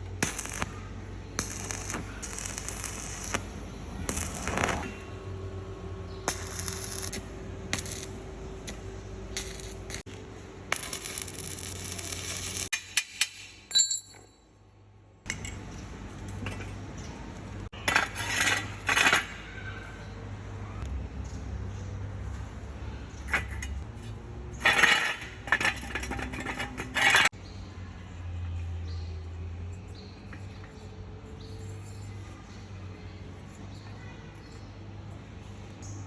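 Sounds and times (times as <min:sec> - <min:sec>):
metal parts clinking and knocking: 0:10.9 - 0:14.4, 0:24.6 - 0:27.3.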